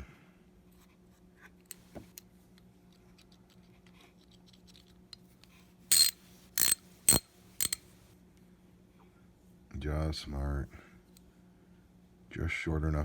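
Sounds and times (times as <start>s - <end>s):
ratchet handle ticking: 5.9s - 7.8s
ratchet metallic clicking: 5.9s - 7.8s.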